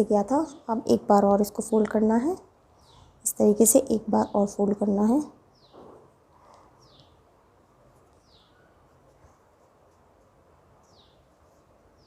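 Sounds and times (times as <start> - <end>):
small bird chirping: 6.8 - 7.2, 8.1 - 8.9, 10.8 - 12.0.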